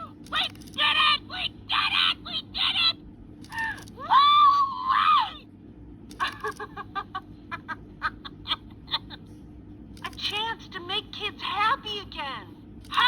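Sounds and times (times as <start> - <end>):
toy voice yelling a whoop: 0.0 - 5.4.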